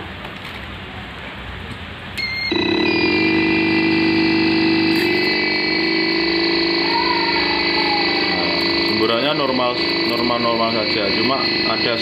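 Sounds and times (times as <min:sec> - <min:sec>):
high-pitched buzzer whine: 0:02.2 - 0:12.0
sprayer pump motor hum: 0:02.5 - 0:12.0.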